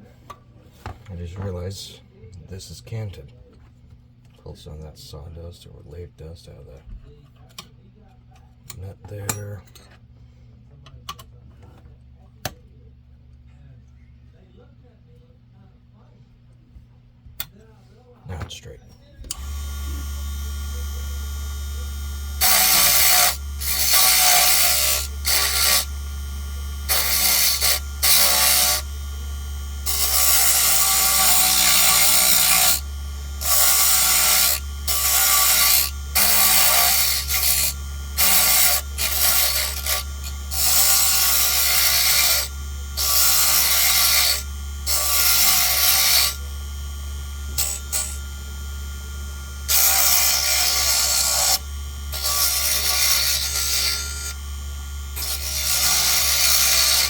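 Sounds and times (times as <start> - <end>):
lathe motor hum: 19.3 - 57.0
turning tool scraping wood: 19.3 - 57.0.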